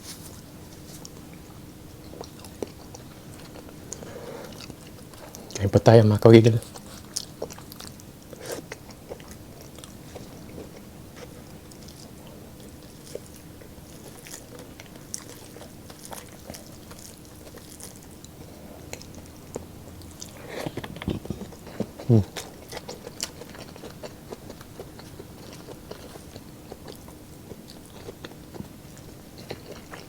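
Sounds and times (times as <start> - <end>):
food crunching: 0.1 - 30.0
person chewing food: 0.2 - 5.7, 6.6 - 30.0.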